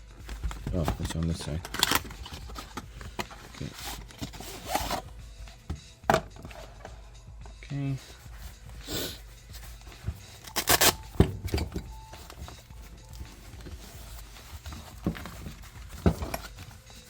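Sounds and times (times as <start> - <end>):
packaging rustling: 0.0 - 5.2, 9.4 - 17.0.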